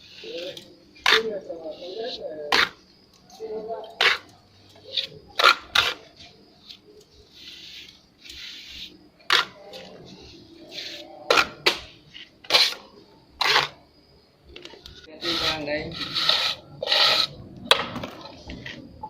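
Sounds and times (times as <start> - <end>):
trowel scraping render: 0.0 - 2.8, 3.9 - 13.8, 15.2 - 17.4.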